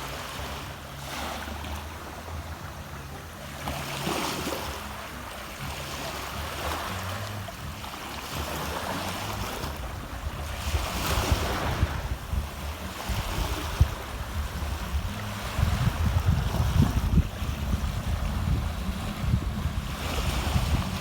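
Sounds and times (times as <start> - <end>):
waves washing onto sandy beach: 0.0 - 21.0
wind rumbling on microphone: 8.4 - 21.0.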